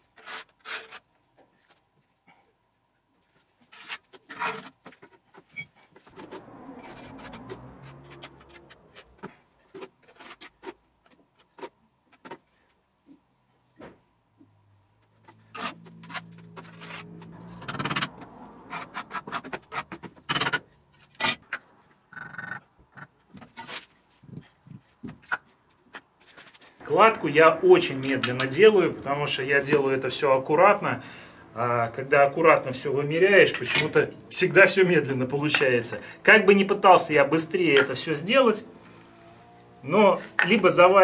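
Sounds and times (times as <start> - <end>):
trowel scraping mortar: 0.0 - 1.1
low hum: 6.0 - 9.2.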